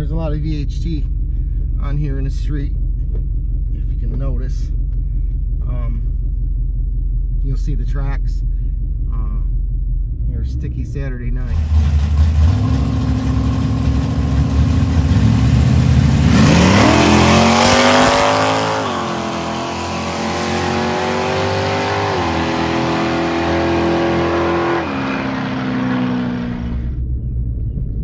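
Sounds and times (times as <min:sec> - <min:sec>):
car engine revving: 0:11.4 - 0:27.0.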